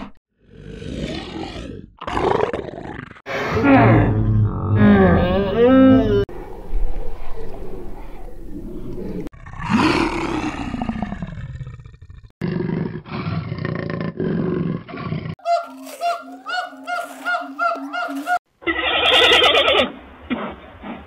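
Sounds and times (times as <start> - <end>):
low harmonically rich animal call: 3.3 - 9.1, 15.4 - 19.8.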